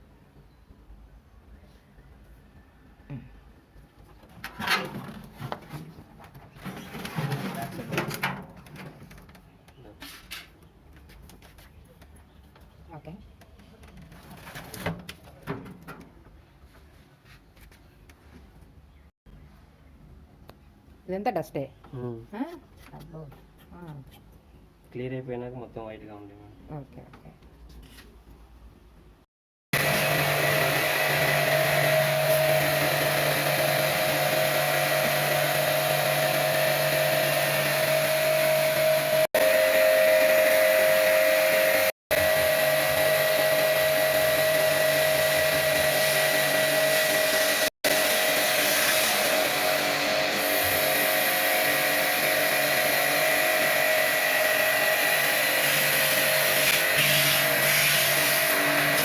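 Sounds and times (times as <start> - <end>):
pressure washer pump whine: 29.8 - 59.0.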